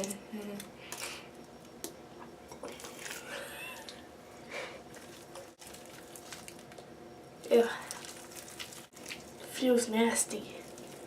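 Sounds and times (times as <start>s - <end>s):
slime squishing: 4.9s - 6.8s, 7.5s - 9.6s.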